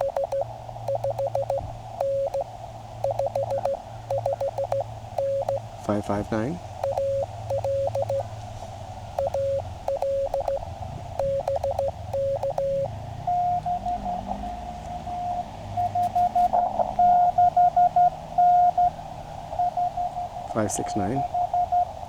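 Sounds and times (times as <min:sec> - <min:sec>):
higher-pitched morse code tone: 0:00.0 - 0:06.1, 0:06.8 - 0:08.3, 0:09.2 - 0:19.0
morse code tone: 0:00.0 - 0:06.1, 0:06.8 - 0:08.3, 0:09.2 - 0:19.0, 0:19.6 - 0:22.0.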